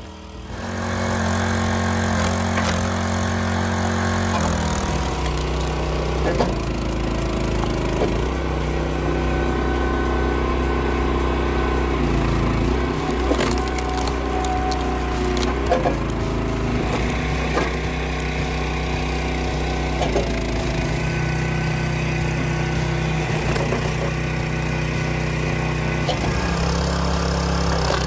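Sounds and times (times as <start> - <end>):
log splitter engine running: 0.0 - 28.0
wood splitting cracks: 0.8 - 6.8, 13.0 - 18.6.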